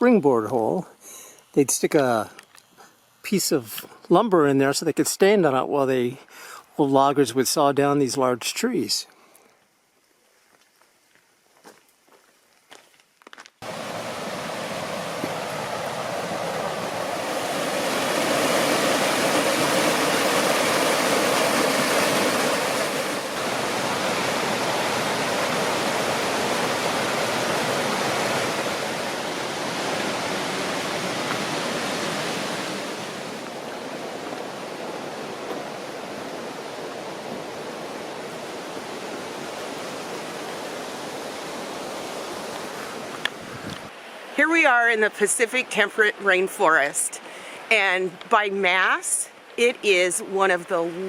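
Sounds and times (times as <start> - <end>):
stream water rushing: 13.6 - 51.0.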